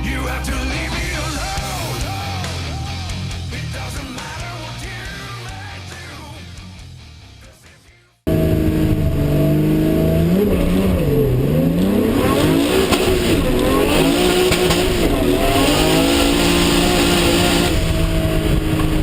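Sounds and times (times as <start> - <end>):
race car engine running hard: 8.3 - 19.0.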